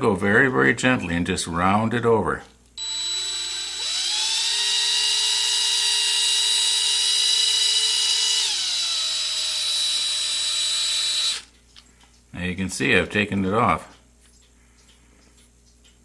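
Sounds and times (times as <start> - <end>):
lathe motor whining: 2.8 - 11.5.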